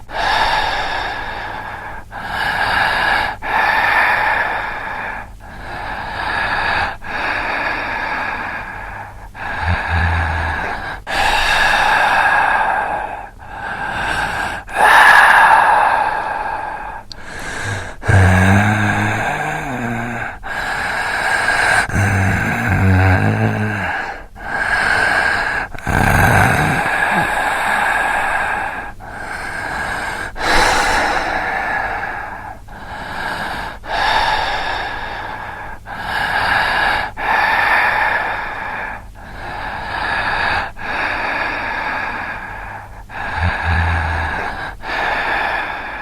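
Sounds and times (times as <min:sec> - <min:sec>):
heavy breathy sighs: 0:00.0 - 0:46.0
low groaning voice: 0:09.5 - 0:11.1, 0:17.7 - 0:20.3, 0:21.9 - 0:24.2, 0:43.2 - 0:44.7.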